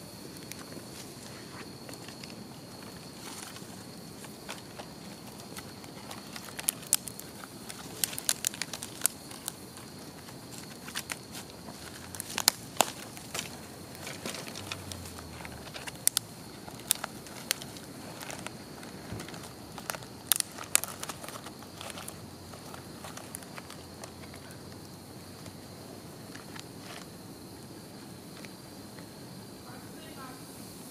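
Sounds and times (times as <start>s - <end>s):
low fire hiss: 0.0s - 30.9s
wood fire crackling and popping: 0.2s - 27.7s.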